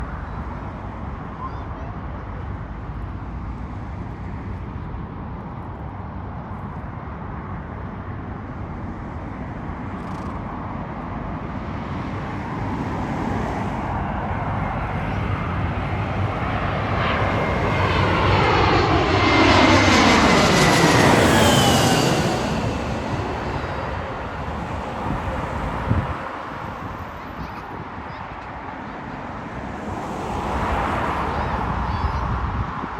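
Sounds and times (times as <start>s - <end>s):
jet engines passing: 8.7s - 32.9s.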